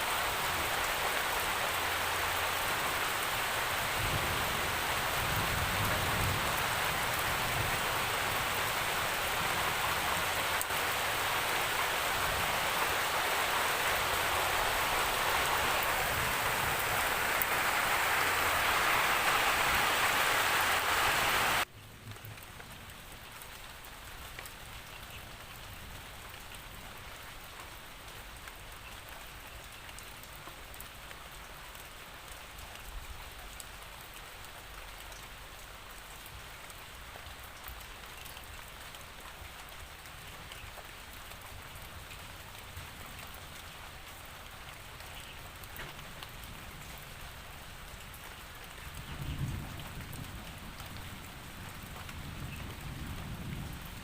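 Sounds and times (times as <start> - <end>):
heavy rain hiss: 0.0 - 24.3, 32.0 - 54.0
light rain drops ticking: 21.3 - 54.0.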